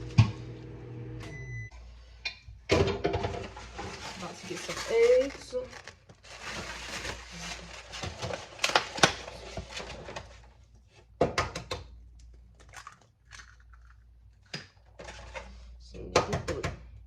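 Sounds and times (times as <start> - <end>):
kitchen clicks and knocks: 2.2 - 4.0, 11.2 - 11.9.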